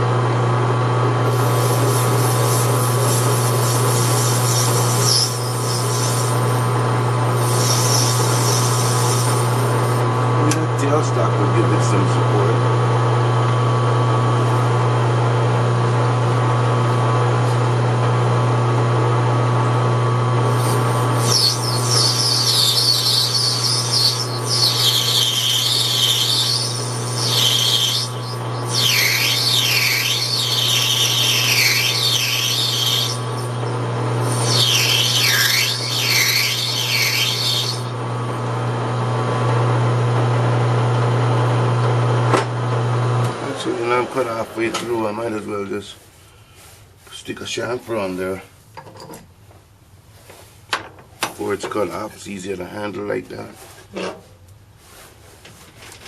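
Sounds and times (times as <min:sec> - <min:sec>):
metal lathe humming: 0:01.2 - 0:10.3, 0:20.4 - 0:38.1
high-pitched scraping of tool cutting brass: 0:01.3 - 0:09.9, 0:20.5 - 0:37.9.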